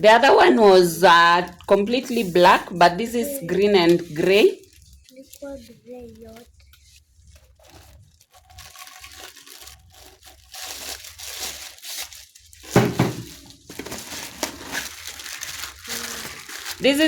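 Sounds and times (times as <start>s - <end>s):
plastic packaging crinkling: 1.4s - 17.0s.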